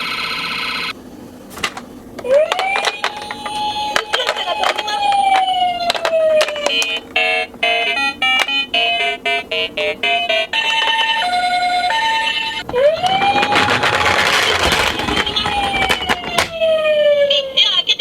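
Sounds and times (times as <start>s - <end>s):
wailing siren: 2.2s - 17.6s
two-tone hi-lo siren: 15.0s - 17.5s.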